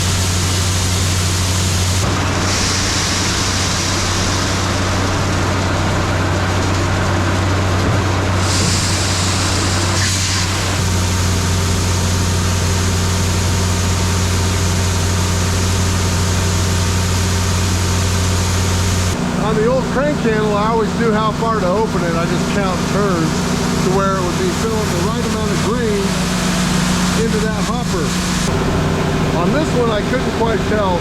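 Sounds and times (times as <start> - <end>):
broad hiss: 0.0 - 5.1, 8.3 - 14.5
diesel engine running: 0.0 - 31.0.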